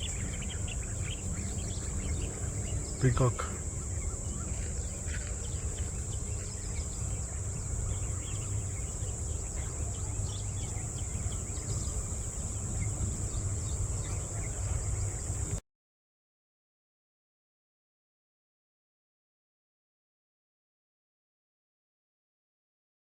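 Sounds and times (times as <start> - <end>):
bird chirps: 0.0 - 15.6
insects droning high-pitched: 0.0 - 15.6.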